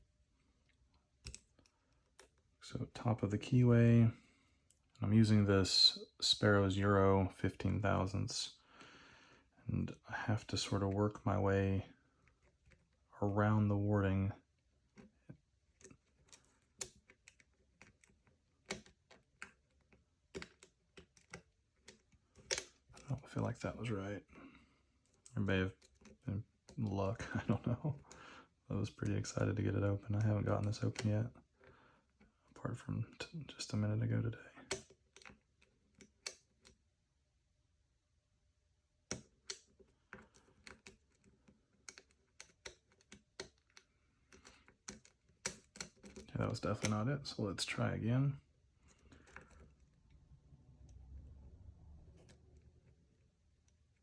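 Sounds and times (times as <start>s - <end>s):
lock pick clicking: 1.2s - 2.4s, 15.7s - 23.1s, 34.7s - 36.8s, 39.1s - 46.9s, 48.8s - 49.9s.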